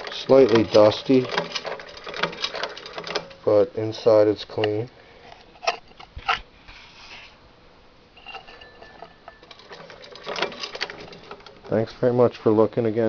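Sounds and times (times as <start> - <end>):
sewing machine parts clicking: 0.0 - 3.5, 9.4 - 11.8.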